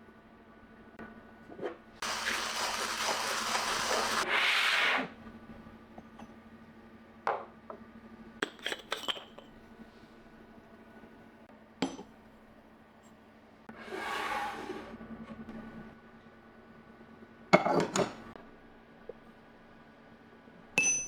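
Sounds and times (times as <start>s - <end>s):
metal and glass clinks: 20.8s - 21.0s.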